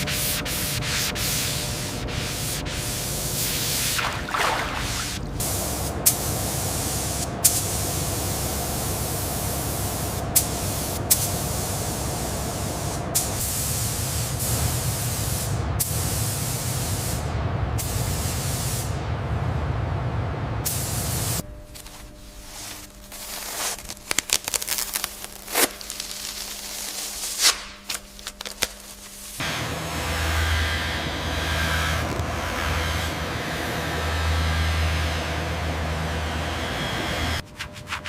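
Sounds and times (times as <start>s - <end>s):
continuous hissing spray: 0.0s - 19.0s, 20.6s - 29.4s
steady low hum: 0.0s - 38.0s.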